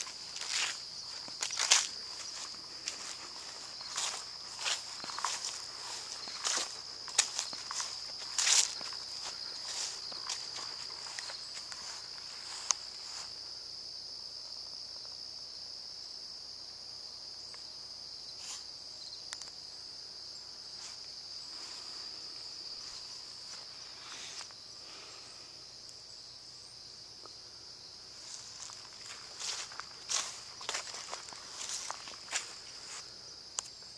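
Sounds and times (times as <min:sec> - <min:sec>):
crickets chirping: 0:00.0 - 0:33.9.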